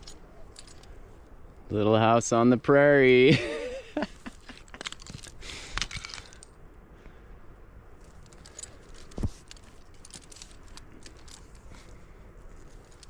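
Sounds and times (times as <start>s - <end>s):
carabiners clinking: 0.0s - 1.7s, 3.3s - 6.6s, 8.0s - 13.0s.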